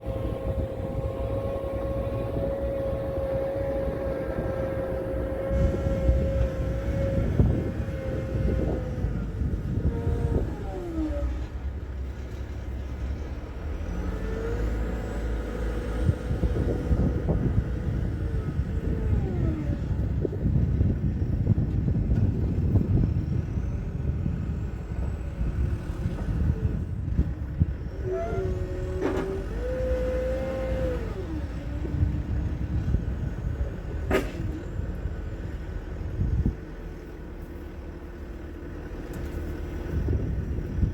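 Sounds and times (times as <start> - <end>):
hydraulic whine gliding down: 0.0 - 11.8
excavator engine rumble: 0.0 - 40.9.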